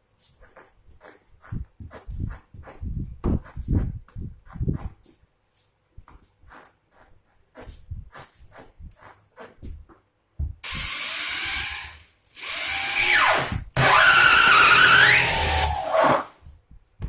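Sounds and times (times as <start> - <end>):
cordless drill driving screws: 10.6 - 16.3.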